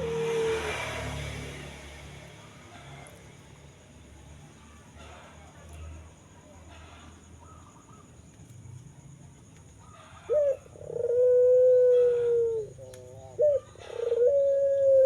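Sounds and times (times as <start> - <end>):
long drawn-out animal calls: 10.0 - 15.0.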